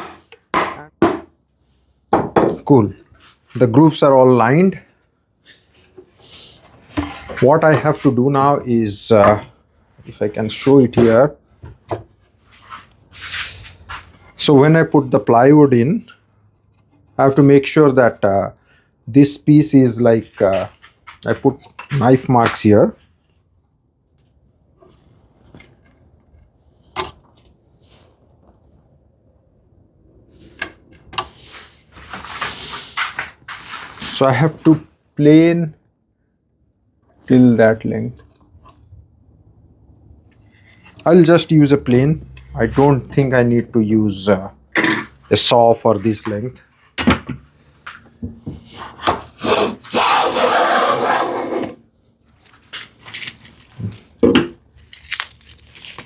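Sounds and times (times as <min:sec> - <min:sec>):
hand plane shaving wood: 0:49.2 - 0:51.8
scraping and rustling: 0:54.8 - 0:56.0.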